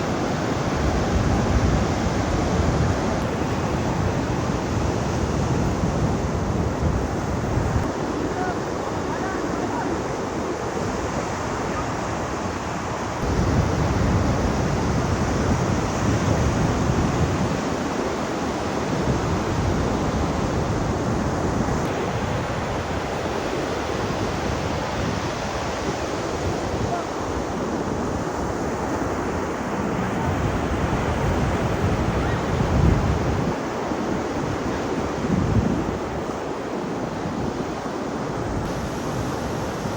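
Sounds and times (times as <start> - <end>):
ocean surf washing in: 0.0 - 39.9
wind on microphone: 0.0 - 39.9.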